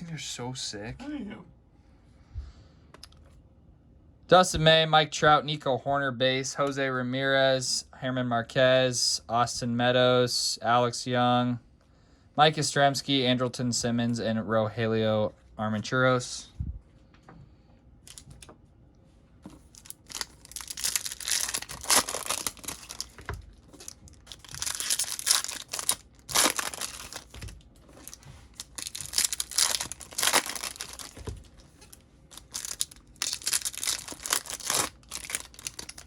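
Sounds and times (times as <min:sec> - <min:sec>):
card pack wrappers tearing: 0:19.6 - 0:31.4, 0:32.3 - 0:36.0.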